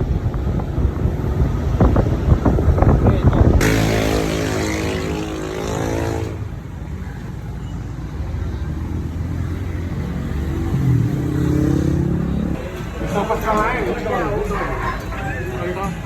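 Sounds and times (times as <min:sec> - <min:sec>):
road noise: 0:00.0 - 0:16.0
vehicle engine rumble: 0:00.0 - 0:16.0.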